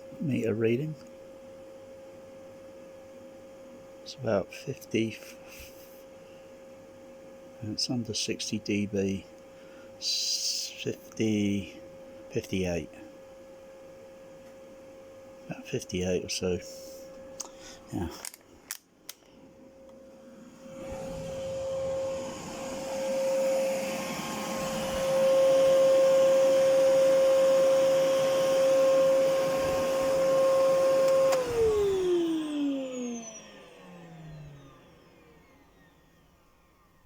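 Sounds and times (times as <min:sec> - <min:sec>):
vacuum cleaner whine: 0:00.0 - 0:18.4, 0:19.3 - 0:37.0
motor spinning down: 0:20.2 - 0:36.3.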